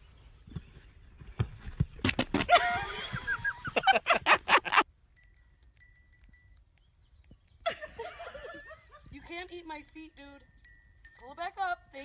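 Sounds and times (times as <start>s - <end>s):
sharp scuffling: 0.5s - 2.6s.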